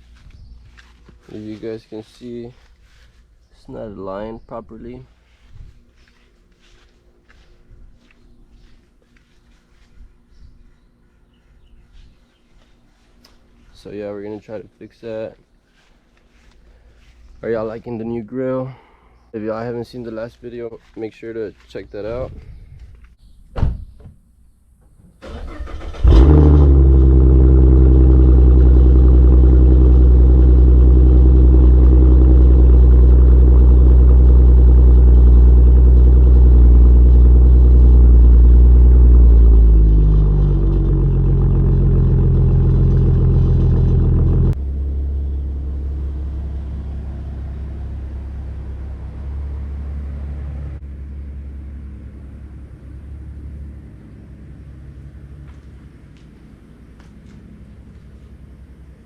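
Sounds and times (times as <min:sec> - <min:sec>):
car engine cranking and idling: 0:25.2 - 0:59.0.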